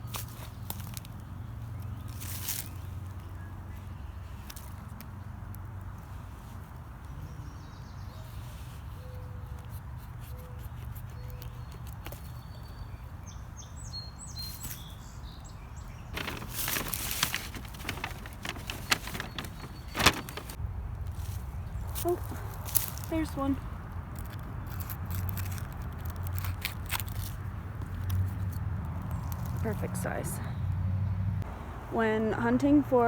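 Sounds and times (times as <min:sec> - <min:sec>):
twigs crackling and snapping: 0:00.0 - 0:03.4, 0:04.3 - 0:07.0, 0:16.1 - 0:29.9
footsteps through undergrowth: 0:01.9 - 0:03.3, 0:16.1 - 0:23.6.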